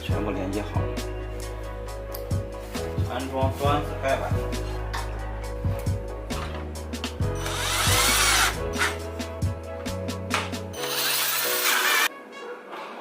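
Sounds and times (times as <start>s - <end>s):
electric screwdriver whining: 7.4s - 9.0s, 10.8s - 12.1s.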